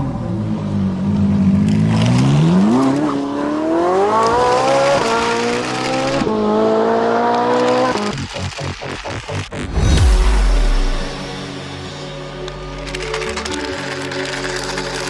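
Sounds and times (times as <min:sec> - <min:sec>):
race car engine accelerating: 0:00.0 - 0:11.2.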